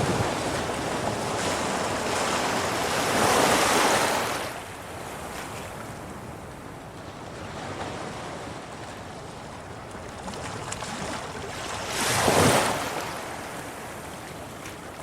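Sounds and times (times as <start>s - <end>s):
sea waves washing against rocks: 0.0s - 4.6s.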